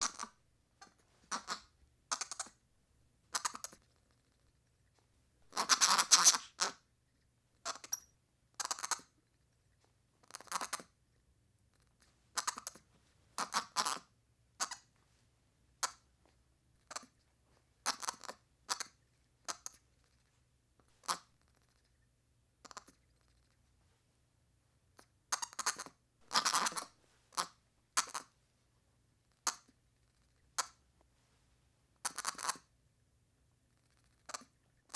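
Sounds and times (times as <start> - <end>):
baby monkey chirping: 0.0 - 2.5, 3.3 - 3.8, 5.5 - 6.8, 7.7 - 9.1, 12.4 - 12.8, 25.0 - 28.3.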